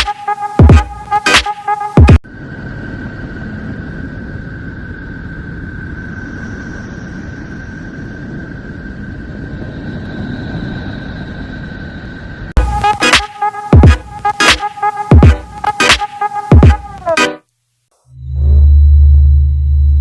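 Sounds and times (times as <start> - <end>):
thin whistle-like tone: 4.8 - 9.1.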